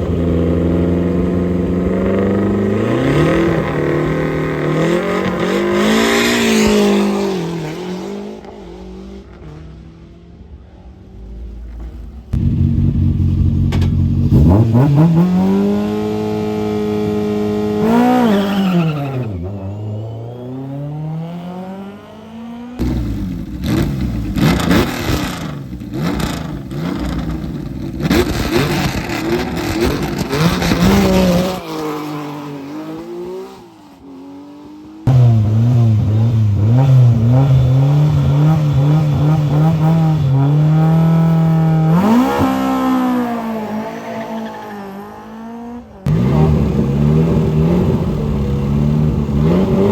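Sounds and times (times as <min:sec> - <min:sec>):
rally car engines revving: 0:00.0 - 0:49.9
engine crackling with pops: 0:13.5 - 0:14.2, 0:22.8 - 0:30.9.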